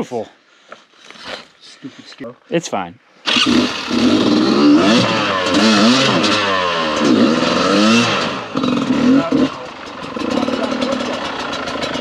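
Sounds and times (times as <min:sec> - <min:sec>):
dirt bike engine revving: 0:03.2 - 0:12.0.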